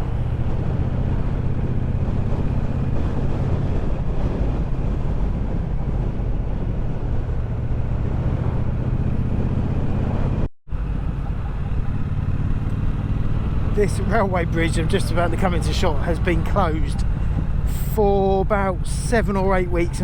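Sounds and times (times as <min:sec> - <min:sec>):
wind rushing over microphone: 0:00.0 - 0:20.0
motorcycle engine running: 0:11.4 - 0:17.8.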